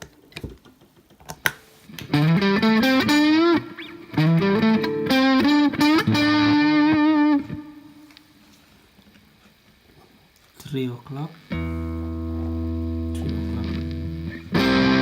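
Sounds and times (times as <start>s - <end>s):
overdriven electric guitar lead: 1.9s - 8.0s, 11.4s - 15.0s.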